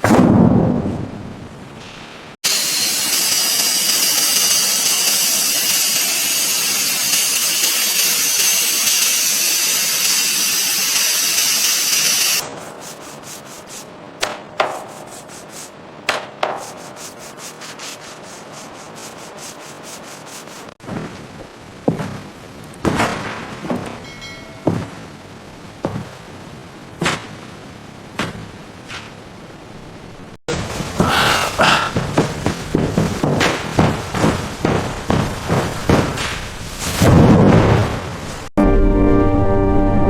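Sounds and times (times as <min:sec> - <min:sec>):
rapid rubbing strokes: 0:02.7 - 0:20.8
knocks: 0:14.2 - 0:15.1, 0:16.1 - 0:16.9, 0:31.0 - 0:36.4.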